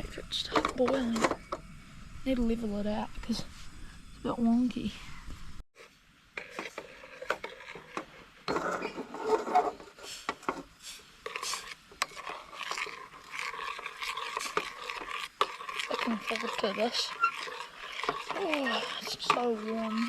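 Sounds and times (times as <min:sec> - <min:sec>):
pot scraping on camp stove: 0:05.8 - 0:20.0.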